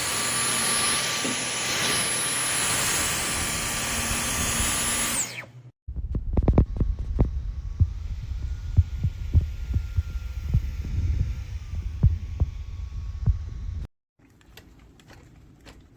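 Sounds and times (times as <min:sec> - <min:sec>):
vacuum cleaner running: 0:00.0 - 0:05.6, 0:06.8 - 0:13.9.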